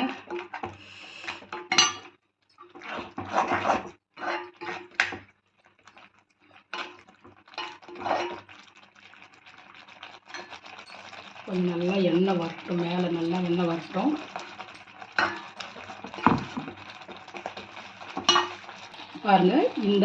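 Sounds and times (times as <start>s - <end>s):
spoon clinking against pan: 1.6s - 3.1s, 10.3s - 17.6s, 18.2s - 18.7s
spoon scraping paste in a pan: 2.5s - 19.8s.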